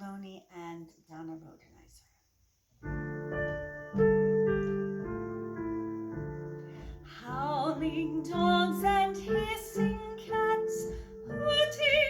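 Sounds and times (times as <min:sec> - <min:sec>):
piano chords: 0:02.8 - 0:12.0.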